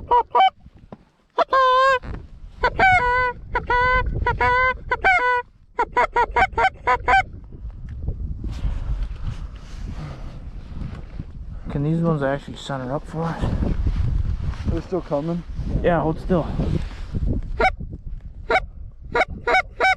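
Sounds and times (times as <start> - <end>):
low wind noise: 0.0 - 19.9
goose honking: 1.4 - 2.0, 2.6 - 7.3.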